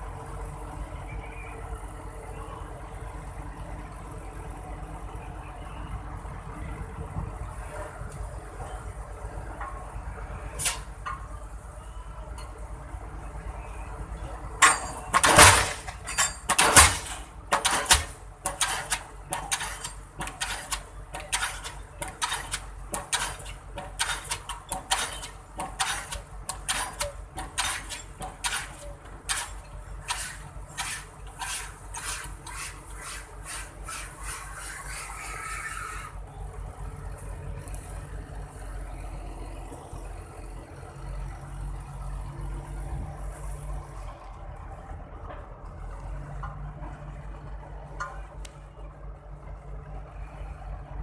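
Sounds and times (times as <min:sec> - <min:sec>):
pile hammer metallic blows: 0:14.6 - 0:34.4.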